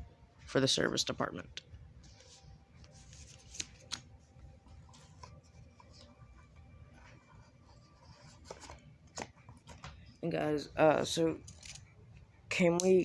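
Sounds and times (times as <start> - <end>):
soft handling rubbing: 2.0 - 10.1.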